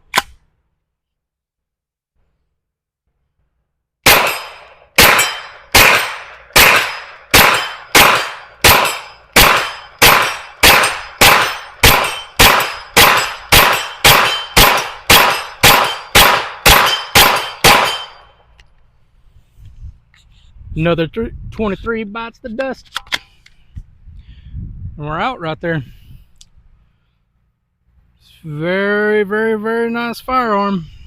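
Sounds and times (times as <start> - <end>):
carbine gunshots: 4.0 - 18.3.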